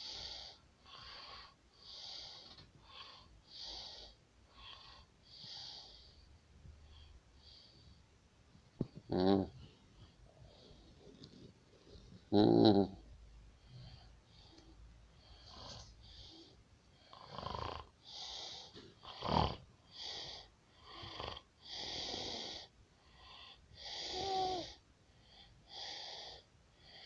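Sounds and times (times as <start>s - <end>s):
pig snoring: 17.1s - 17.9s, 19.1s - 19.6s, 20.2s - 22.7s.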